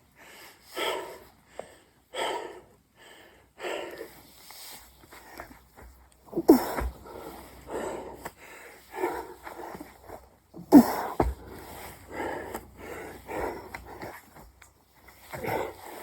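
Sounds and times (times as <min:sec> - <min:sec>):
man panting: 0:00.1 - 0:04.3, 0:06.3 - 0:14.4, 0:15.2 - 0:16.0
man exhaling with strain: 0:06.3 - 0:08.2, 0:10.6 - 0:14.2
low thump: 0:10.8 - 0:14.1.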